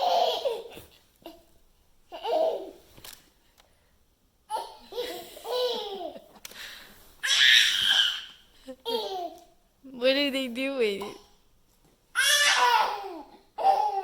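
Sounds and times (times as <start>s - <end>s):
young child laughing and babbling: 7.2s - 9.4s.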